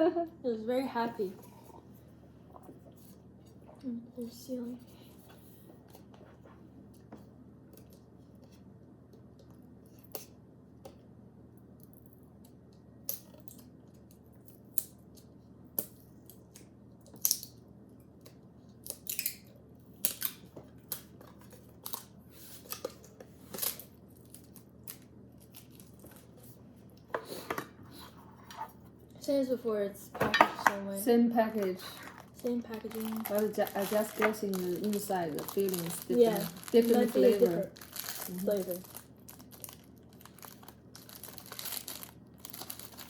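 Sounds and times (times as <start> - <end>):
plastic wrapping crinkling: 31.5 - 43.0.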